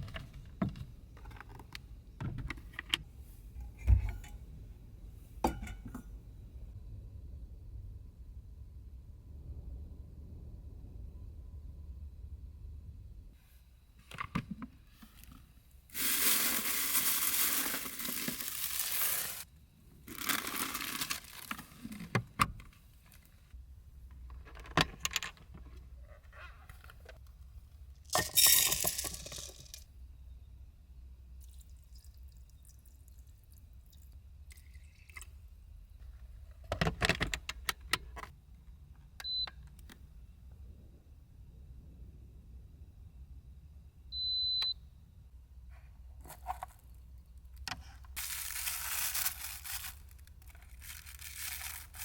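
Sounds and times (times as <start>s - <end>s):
rustling or pouring noise: 15.9s - 22.1s, 28.1s - 29.8s, 48.2s - 52.0s
small objects clicking and clinking: 16.0s - 19.4s, 28.1s - 29.8s, 48.2s - 52.0s.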